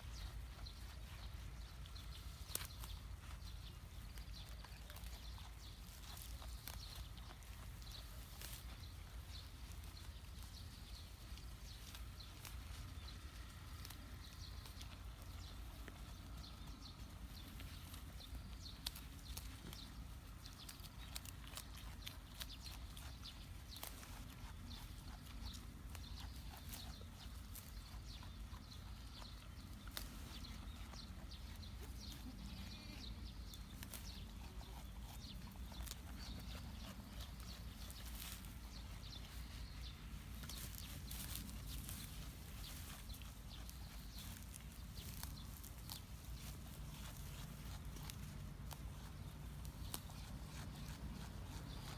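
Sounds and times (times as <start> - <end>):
low steady rumble: 0.0 - 51.9
goat moving clicks and rustles: 33.1 - 51.9.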